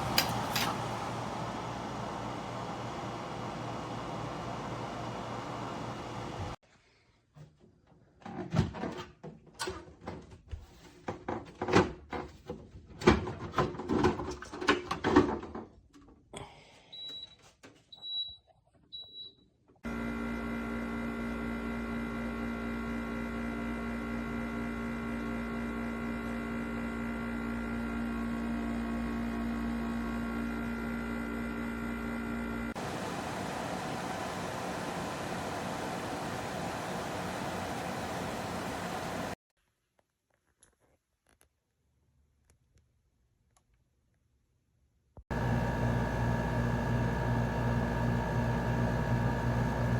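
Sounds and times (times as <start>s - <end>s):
dehumidifier humming: 0.0s - 6.6s, 32.8s - 39.4s, 45.3s - 49.9s
rush of fan air: 32.8s - 39.4s.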